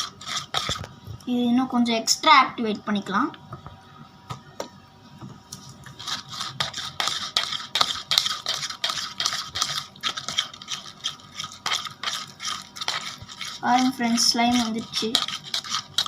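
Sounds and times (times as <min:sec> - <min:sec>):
plastic spoon scraping plastic bowl: 0:00.0 - 0:00.9, 0:05.6 - 0:16.0.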